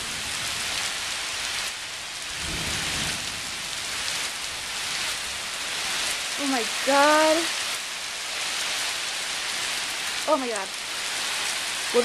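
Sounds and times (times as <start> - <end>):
low rumble of thunder: 0.0 - 1.1, 2.1 - 5.8
heavy rain pouring: 0.0 - 12.0.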